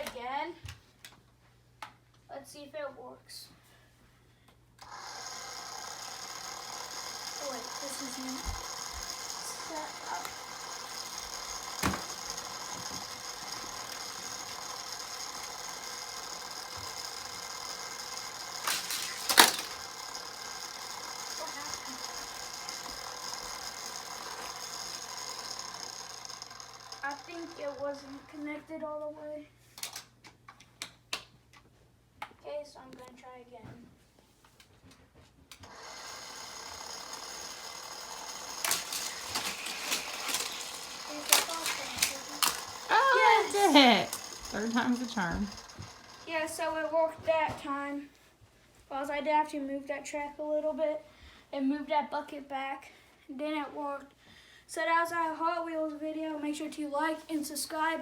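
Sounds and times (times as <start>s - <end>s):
toy track booster whirring: 4.8s - 28.8s, 29.8s - 30.1s, 35.5s - 47.8s.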